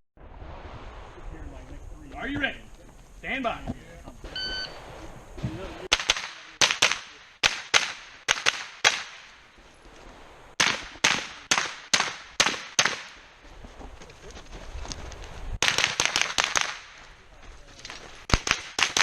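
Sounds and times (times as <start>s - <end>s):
rifle shots: 4.2s - 9.4s, 10.6s - 13.3s, 15.6s - 17.0s, 18.3s - 19.0s.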